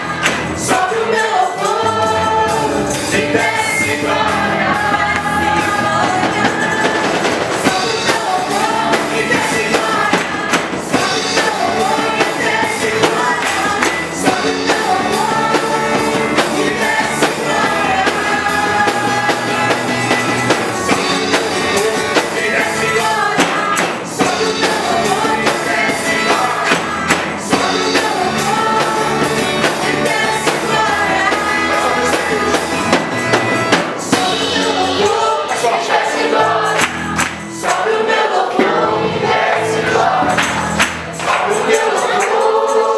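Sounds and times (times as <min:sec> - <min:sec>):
worship song with band: 0:00.0 - 0:42.9.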